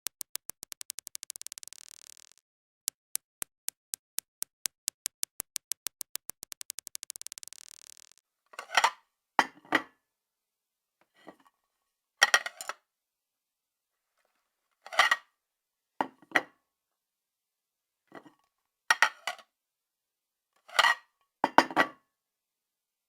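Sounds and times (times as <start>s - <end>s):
small ball bouncing: 0.0s - 8.2s.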